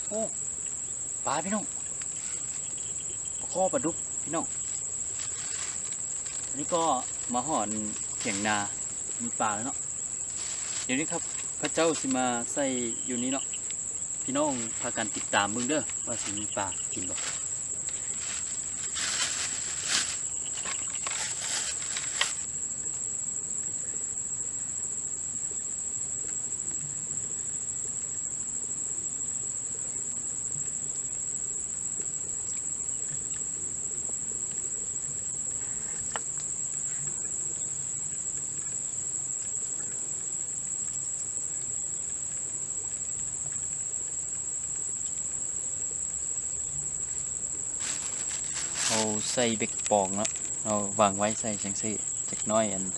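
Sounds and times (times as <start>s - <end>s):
insects chirring: 0.0s - 52.9s.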